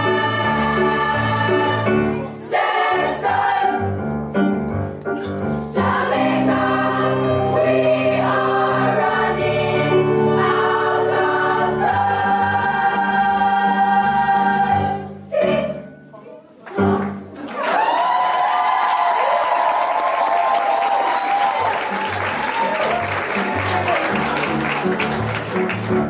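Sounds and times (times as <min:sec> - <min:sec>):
choir singing in harmony: 0:00.0 - 0:04.2, 0:05.4 - 0:16.1, 0:16.7 - 0:17.4.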